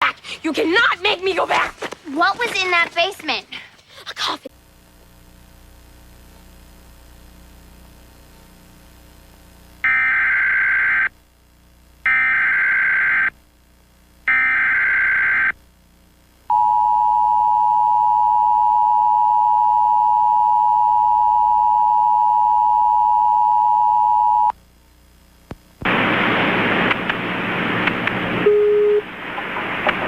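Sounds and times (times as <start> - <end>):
loud hiss: 25.9 - 28.5.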